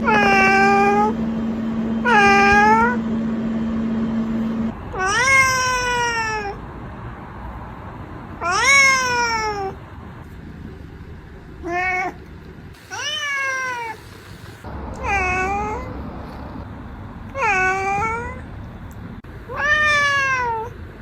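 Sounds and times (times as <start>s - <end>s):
cat meowing: 0.0s - 1.2s, 2.0s - 3.0s, 4.9s - 6.6s, 8.4s - 9.8s, 11.6s - 12.2s, 12.9s - 14.0s, 14.9s - 15.9s, 17.4s - 18.4s, 19.5s - 20.8s
steady low hum: 0.0s - 4.9s, 14.0s - 17.4s.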